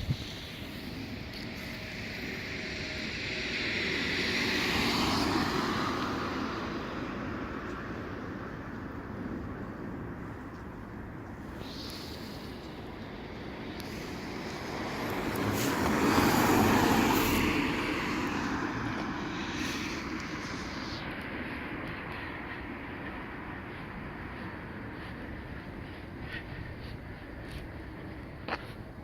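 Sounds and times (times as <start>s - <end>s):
road vehicle passing by: 0.5s - 10.4s, 11.4s - 28.8s
passing vehicle rushing: 13.7s - 21.6s.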